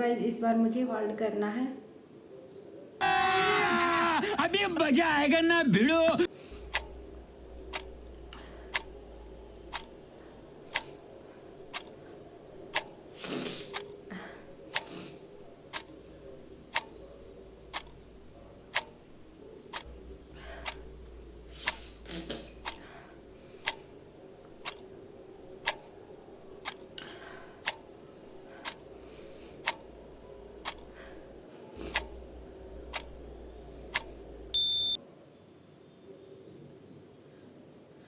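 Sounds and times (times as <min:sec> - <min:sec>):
soft hiss-like noises: 0:00.0 - 0:03.0, 0:06.2 - 0:38.0
clock ticking: 0:06.5 - 0:35.0.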